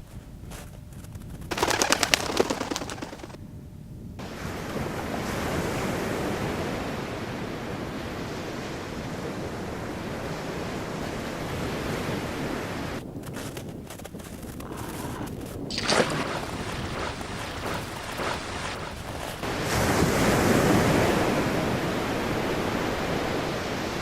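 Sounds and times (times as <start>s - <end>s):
surf rushing: 1.5s - 3.4s, 15.7s - 24.0s
crackling splashing burst: 15.1s - 22.9s.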